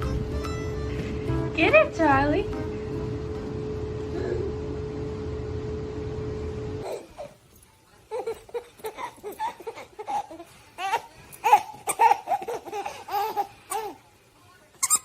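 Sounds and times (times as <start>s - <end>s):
baby laughing: 6.8s - 7.4s, 8.1s - 14.0s.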